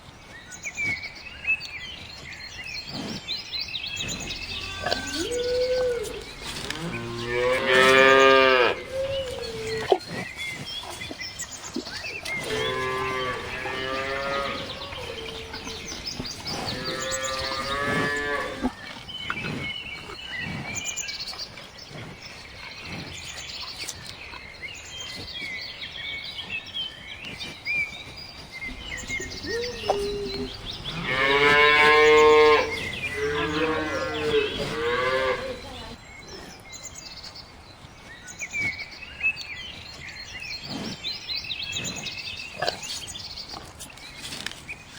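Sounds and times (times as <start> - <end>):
cow mooing: 4.2 - 9.8, 12.4 - 16.0, 16.6 - 18.7, 28.7 - 36.0
faint bird chirps: 28.7 - 35.9.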